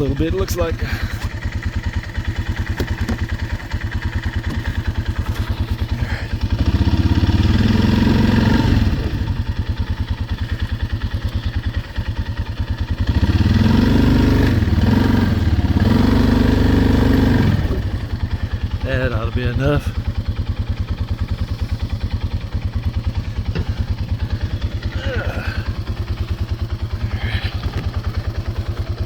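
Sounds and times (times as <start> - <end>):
small engine running: 0.0 - 29.0.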